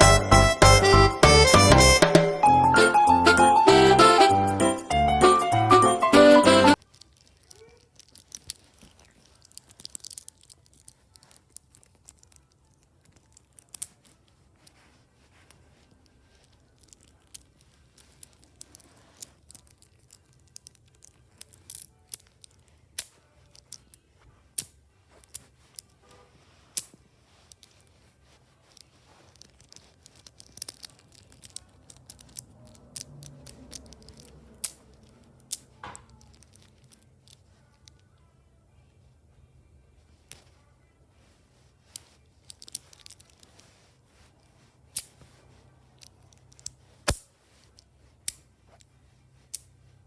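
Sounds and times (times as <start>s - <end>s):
faint rustling: 6.7s - 38.3s, 39.9s - 50.0s
sharp clicks and snaps: 29.4s - 38.0s, 46.0s - 47.3s.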